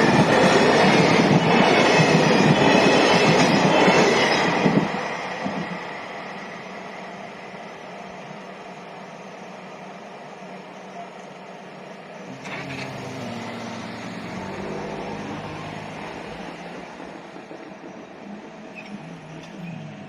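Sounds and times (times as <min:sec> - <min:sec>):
vehicle engine passing: 0:12.3 - 0:16.5.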